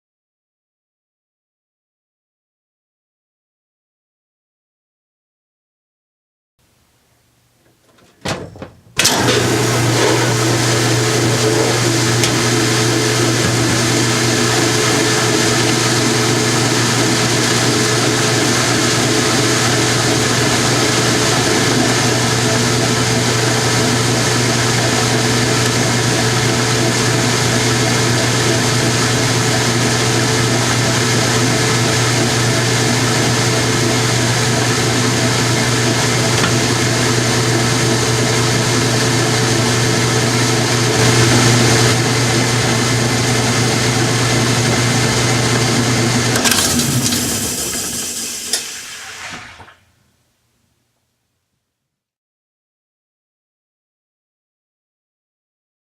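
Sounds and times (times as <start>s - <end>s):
washing machine clicks: 7.9s - 9.5s
washing machine motor humming: 8.1s - 49.7s.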